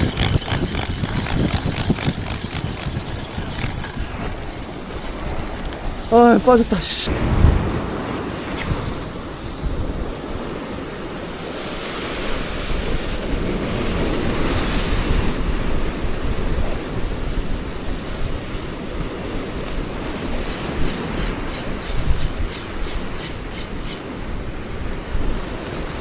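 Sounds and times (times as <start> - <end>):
surf washing against rocks: 0.0 - 20.4
wind buffeting microphone: 0.0 - 26.0.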